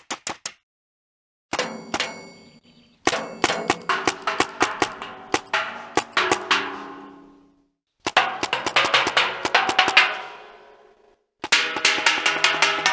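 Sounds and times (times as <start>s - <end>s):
ringing metallic clang: 1.6s - 7.6s, 8.2s - 11.0s, 11.6s - 12.9s.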